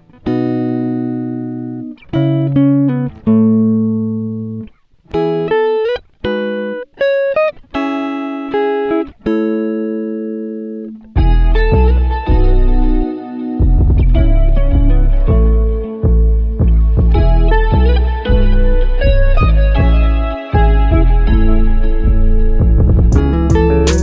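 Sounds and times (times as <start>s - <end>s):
plucked guitar melody: 0.0s - 24.0s
deep bass accompaniment: 11.2s - 24.0s.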